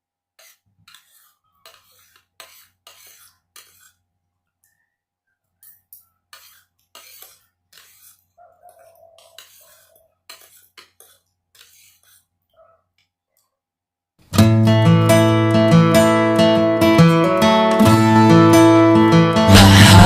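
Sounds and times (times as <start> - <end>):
strummed acoustic guitar music: 14.3 - 20.0.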